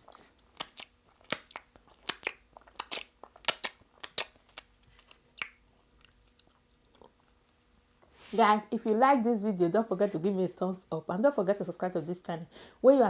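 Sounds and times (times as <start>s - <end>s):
person chewing and mouth smacks: 0.0s - 8.0s.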